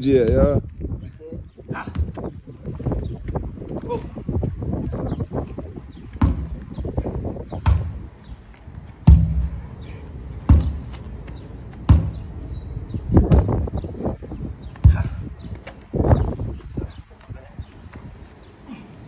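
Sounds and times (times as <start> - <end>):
sledgehammer thudding on tire: 6.2 - 8.1, 9.1 - 11.1, 11.9 - 12.3, 13.2 - 13.7, 14.8 - 15.3.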